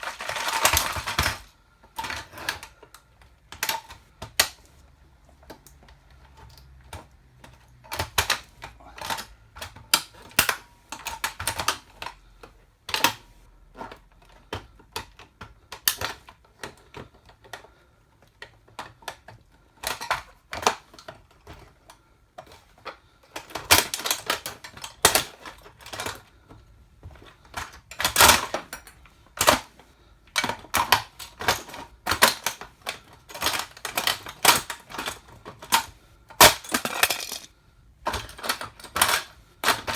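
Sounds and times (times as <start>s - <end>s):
toy car cracking under heels: 0.0s - 2.7s, 22.6s - 26.5s, 27.1s - 29.7s, 30.4s - 37.5s.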